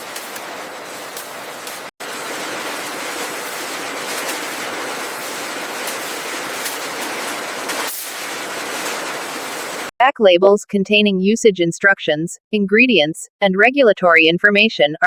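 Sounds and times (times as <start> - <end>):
packaging line machine noise: 0.0 - 9.9.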